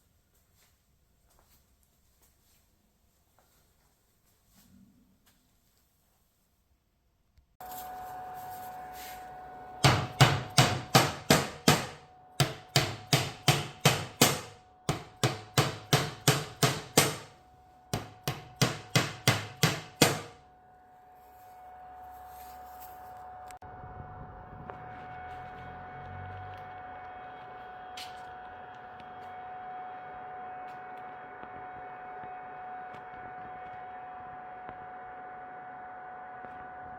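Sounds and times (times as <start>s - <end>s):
hammer driving wooden dowels: 9.8s - 17.3s, 18.0s - 20.4s.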